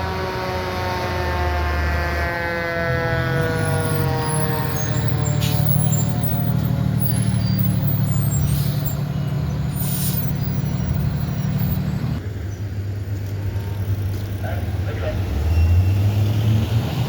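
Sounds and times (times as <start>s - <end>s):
fire truck engine rumbling: 0.0s - 17.0s
short hisses: 9.8s - 10.4s.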